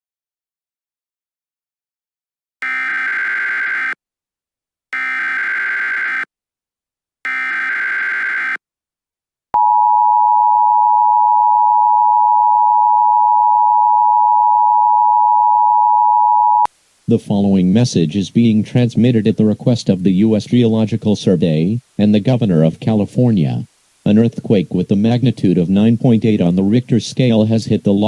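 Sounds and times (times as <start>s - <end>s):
buzzy digital data tones: 2.6s - 4.0s, 5.0s - 6.3s, 7.3s - 8.6s
two-tone attention signal: 7.3s - 8.6s.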